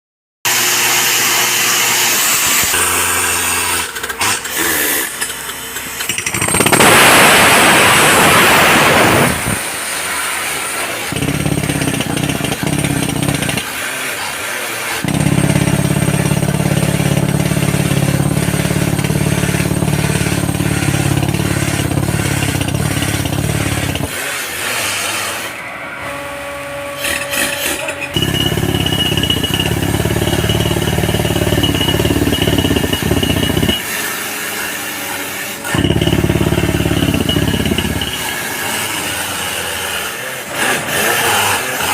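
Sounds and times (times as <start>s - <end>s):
engine-driven earth drill: 0.5s - 41.9s
loud rushing noise: 6.3s - 13.4s.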